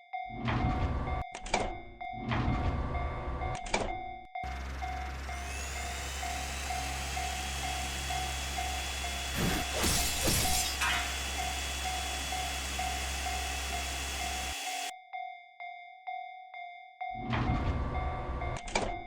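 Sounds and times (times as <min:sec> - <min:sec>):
level-crossing alarm bell ringing: 0:01.9 - 0:09.2, 0:10.7 - 0:18.6.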